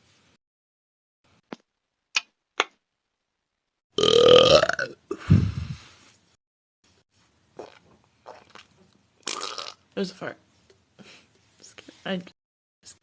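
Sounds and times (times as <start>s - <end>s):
woman belching loudly: 4.0s - 5.0s.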